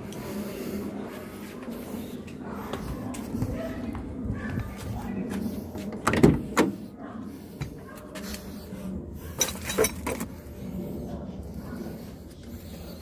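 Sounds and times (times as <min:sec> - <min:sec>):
hand tools clinking and knocking: 0:09.3 - 0:10.3.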